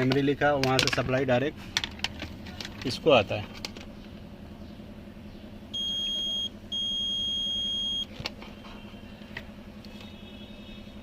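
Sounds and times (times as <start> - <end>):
multimeter buzzer beeping: 5.8 - 8.1.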